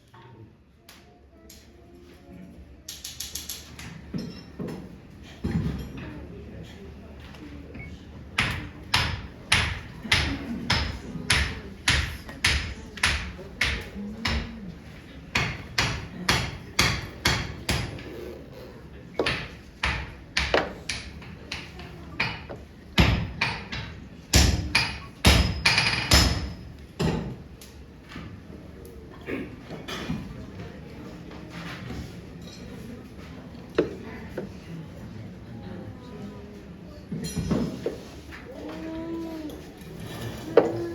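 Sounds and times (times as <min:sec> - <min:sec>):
hammers striking steel on anvil: 0:08.4 - 0:14.5, 0:15.3 - 0:18.1, 0:19.2 - 0:27.2.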